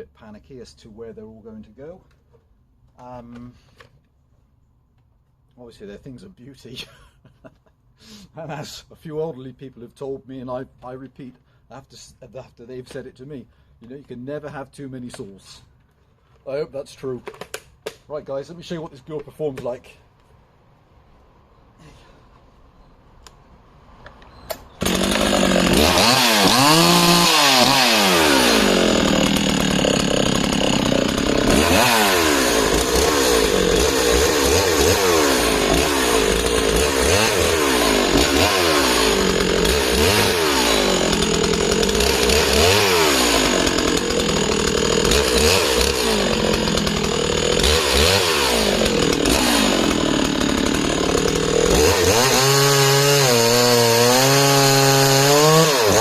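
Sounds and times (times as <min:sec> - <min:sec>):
chainsaw cutting logs: 0:17.2 - 0:18.2, 0:24.5 - 0:56.0.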